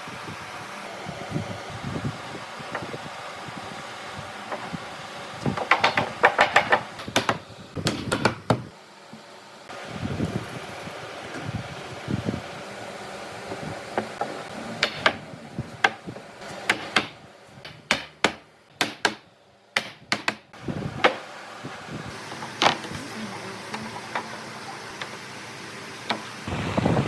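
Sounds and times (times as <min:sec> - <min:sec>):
sharp knocks and taps: 0:05.6 - 0:08.6.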